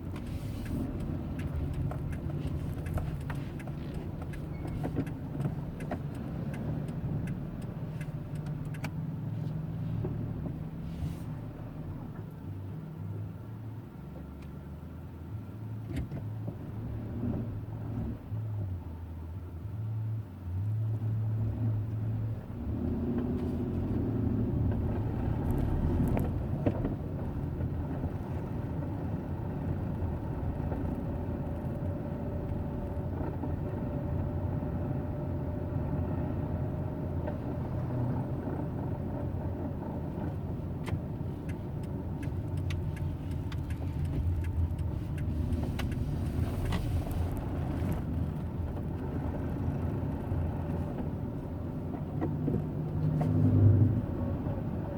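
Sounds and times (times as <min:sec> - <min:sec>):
car engine low rumble: 0:00.0 - 0:54.9
scattered clicks: 0:40.8 - 0:46.8.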